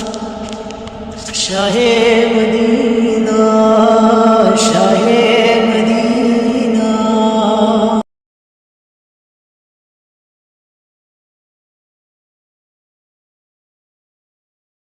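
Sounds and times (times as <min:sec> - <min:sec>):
layered vocal drone: 0:00.0 - 0:08.0
man singing a cappella: 0:00.0 - 0:08.1.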